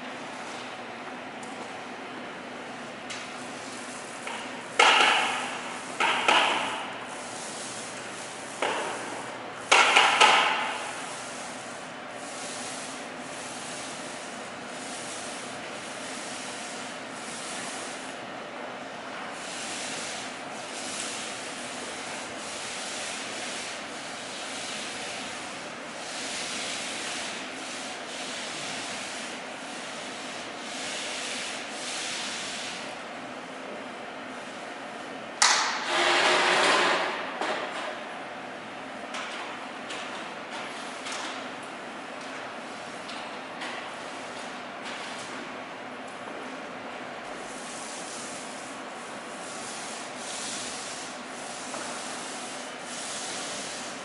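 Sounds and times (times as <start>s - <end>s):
loud scrapes: 35.8s - 37.1s.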